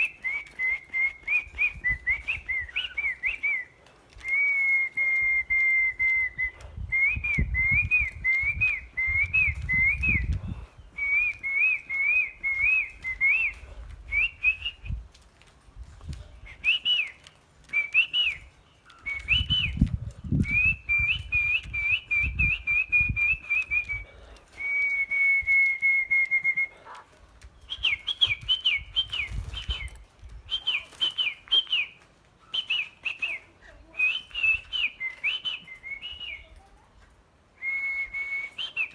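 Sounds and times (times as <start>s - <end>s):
songbird singing: 16.0s - 24.0s, 27.4s - 36.7s.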